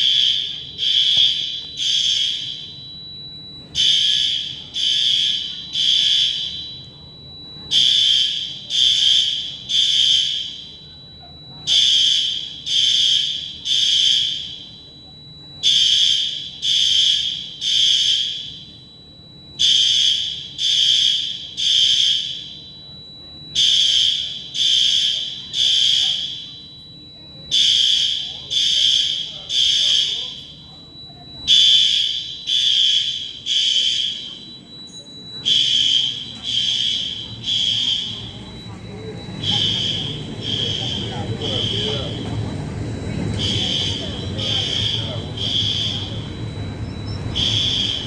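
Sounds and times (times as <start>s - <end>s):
fire alarm horn pulses: 0.0s - 48.0s
thin steady high tone: 0.0s - 48.0s.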